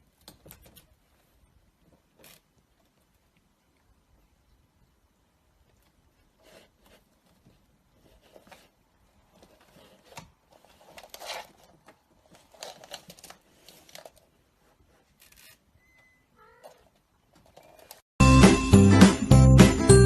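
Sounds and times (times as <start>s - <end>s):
rustling and crinkling: 0.0s - 4.2s, 5.5s - 15.8s, 16.5s - 18.0s.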